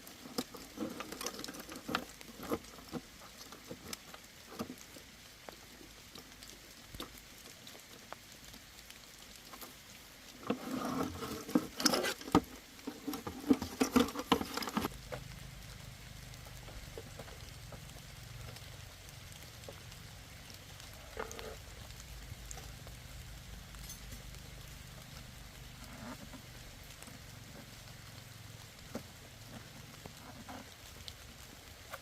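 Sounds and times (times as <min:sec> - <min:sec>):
hands handling parts and tools: 0:10.5 - 0:14.9.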